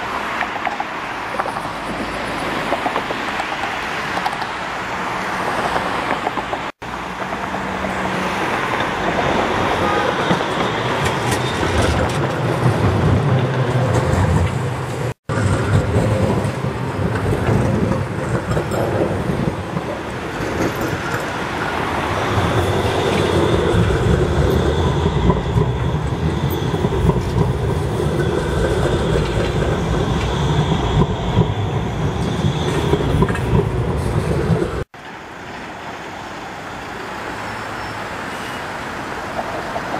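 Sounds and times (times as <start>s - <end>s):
tram rumble with wheel clatter: 0.0s - 39.9s
high-pitched wheel squeal: 21.8s - 34.8s.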